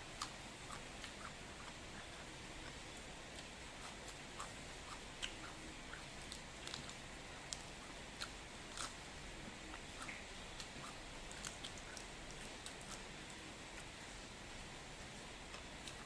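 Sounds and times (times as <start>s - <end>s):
person chewing crunchy food: 0.2s - 9.0s, 9.6s - 13.1s.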